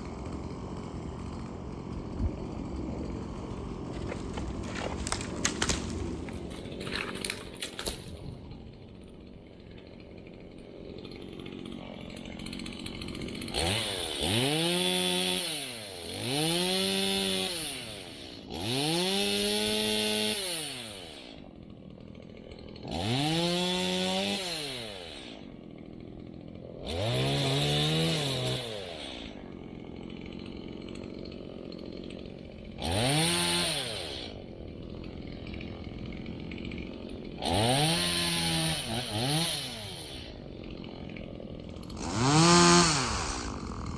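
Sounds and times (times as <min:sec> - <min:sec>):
chainsaw revving and idling: 0:00.0 - 0:43.9.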